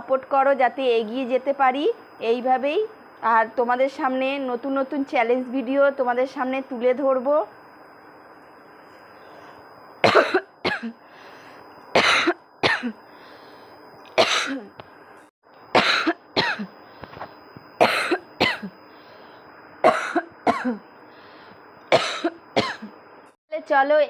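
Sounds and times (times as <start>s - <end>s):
person coughing hard: 10.0s - 11.0s, 12.0s - 13.0s, 14.2s - 14.7s, 15.8s - 16.7s, 17.8s - 18.7s, 19.8s - 20.8s, 21.9s - 22.9s.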